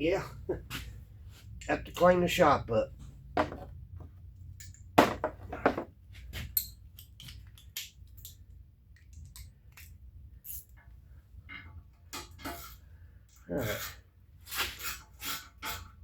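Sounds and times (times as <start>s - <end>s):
loud knocks: 3.4s - 3.7s, 5.0s - 5.9s
metallic clicks of hand tools: 6.5s - 10.7s.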